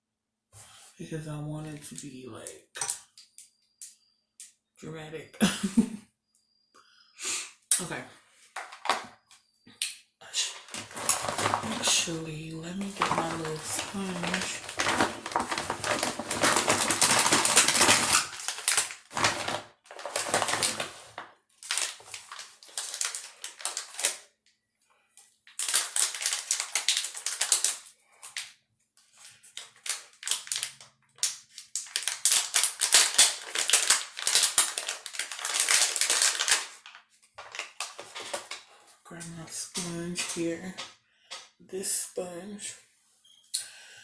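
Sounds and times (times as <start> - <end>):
makeup items clattering: 8.6 - 9.1, 10.5 - 21.1, 37.4 - 41.5.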